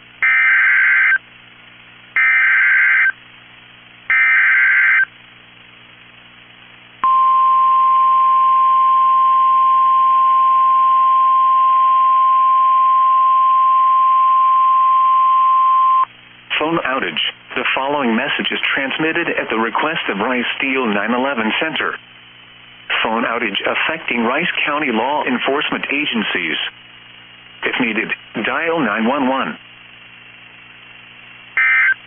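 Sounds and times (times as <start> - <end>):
faint low hum: 0.0 - 32.0
screeching digital data bursts: 0.2 - 1.2, 4.1 - 5.1, 31.6 - 32.0
steady high alert tone: 31.6 - 32.0.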